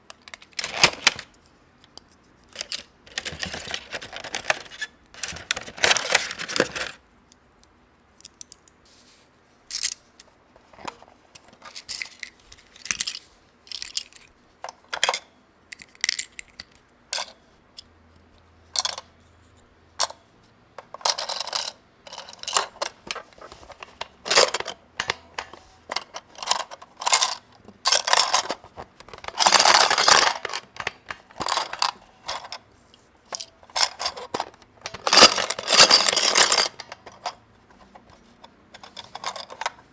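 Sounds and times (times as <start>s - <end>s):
packaging crinkling: 2.6s - 7.0s, 26.3s - 32.0s
plastic toy pieces clicking: 24.0s - 32.6s, 33.8s - 37.3s.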